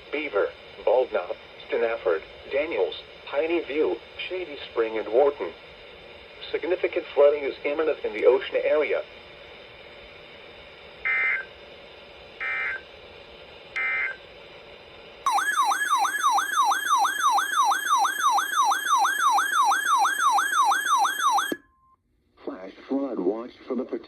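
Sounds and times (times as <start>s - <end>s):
shrill digital bursts: 15.3s - 21.6s
siren-like alert tone sweeping: 15.3s - 21.6s.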